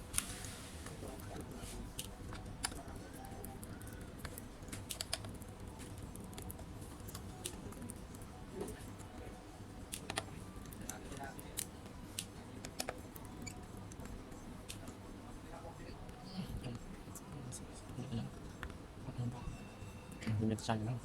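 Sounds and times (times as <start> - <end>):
laptop keyboard clicks: 1.9 - 8.0, 9.9 - 15.0.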